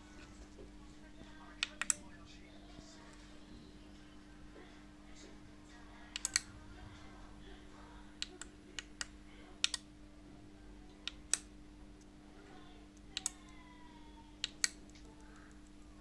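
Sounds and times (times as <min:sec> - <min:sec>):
low electrical hum: 0:00.0 - 0:16.0
sharp clicks: 0:01.6 - 0:02.1, 0:06.1 - 0:06.6, 0:08.1 - 0:09.9, 0:11.0 - 0:12.1, 0:13.0 - 0:13.6, 0:14.4 - 0:15.9.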